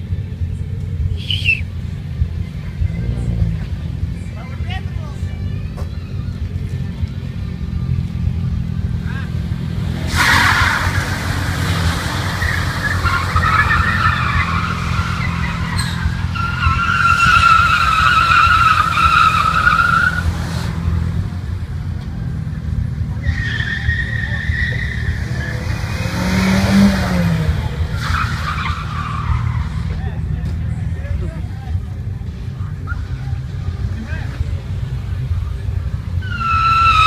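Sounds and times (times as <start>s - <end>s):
shrill whistle: 1.2s - 1.7s.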